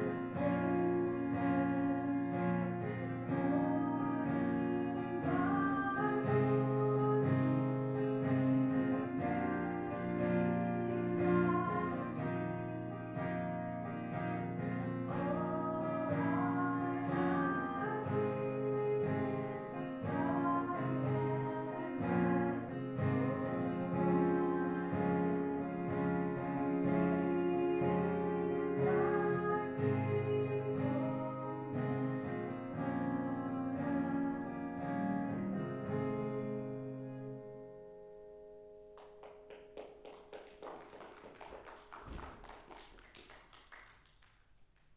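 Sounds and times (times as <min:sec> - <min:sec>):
acoustic guitar music: 0:00.0 - 0:41.7.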